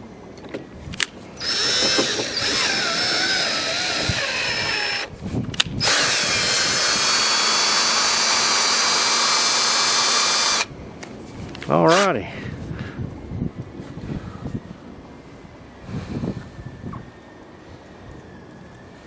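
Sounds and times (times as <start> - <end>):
power drill running: 1.4 - 5.1, 5.8 - 10.7.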